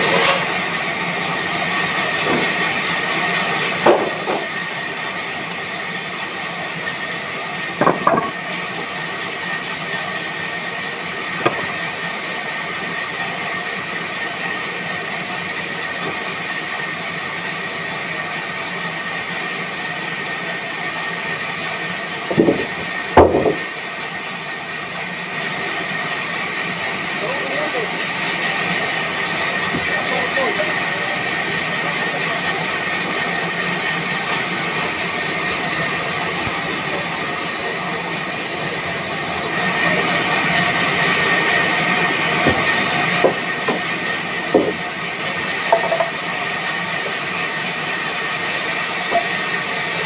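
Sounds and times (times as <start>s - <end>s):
sawmill machinery whining: 0.0s - 50.0s
knocks and thuds: 7.8s - 8.4s, 11.4s - 11.8s, 22.3s - 23.7s, 42.4s - 43.9s, 44.5s - 44.8s.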